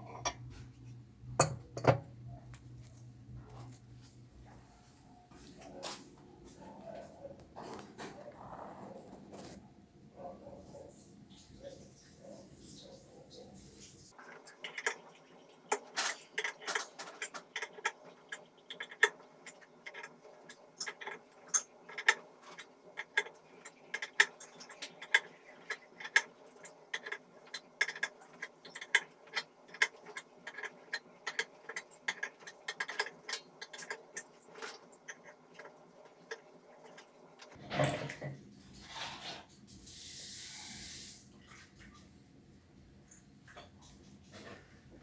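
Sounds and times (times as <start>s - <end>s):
hand tools clicking and tapping: 15.7s - 37.6s.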